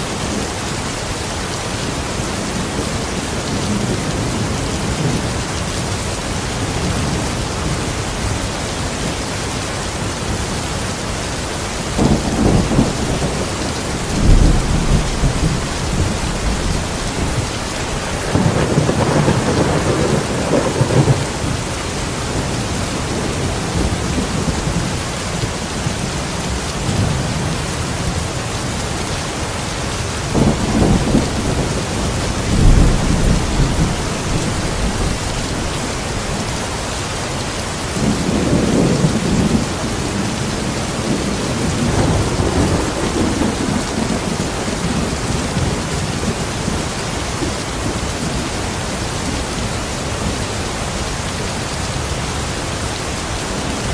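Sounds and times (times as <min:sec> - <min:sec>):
heavy rain: 0:00.0 - 0:53.9
thunder rumbling: 0:12.0 - 0:28.3, 0:30.3 - 0:36.9, 0:37.9 - 0:48.4.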